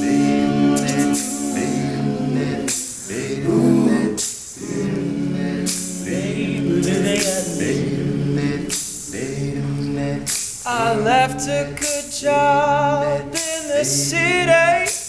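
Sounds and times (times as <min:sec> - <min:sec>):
hissing vocal percussion: 0:00.0 - 0:15.0
male a cappella group singing: 0:00.0 - 0:15.0.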